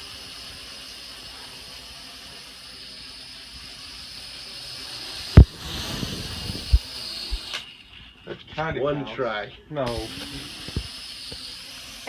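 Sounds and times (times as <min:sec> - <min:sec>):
drone propellers whining: 0:00.0 - 0:07.7, 0:09.9 - 0:12.0
sharp loud thump: 0:05.4 - 0:06.8.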